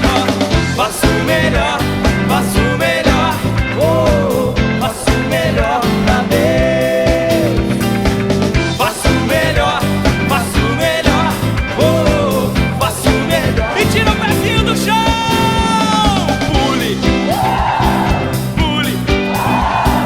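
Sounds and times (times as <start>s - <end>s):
man singing: 0.0s - 19.5s
gospel band playing: 0.0s - 20.0s.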